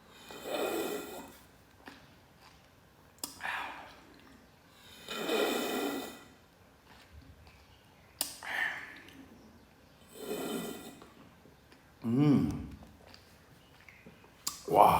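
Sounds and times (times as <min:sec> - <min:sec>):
mouth sucking and slurping: 0:00.1 - 0:01.5, 0:04.8 - 0:07.1, 0:10.1 - 0:11.2
mouth clicks: 0:11.7 - 0:14.9.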